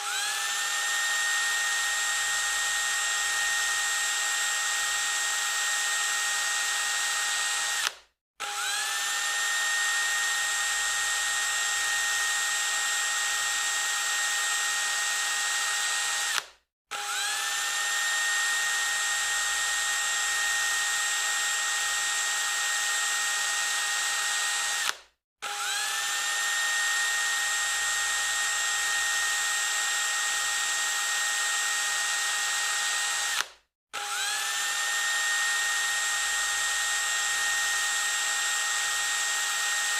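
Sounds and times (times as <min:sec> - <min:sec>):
electric drill whining: 0:00.0 - 0:39.9.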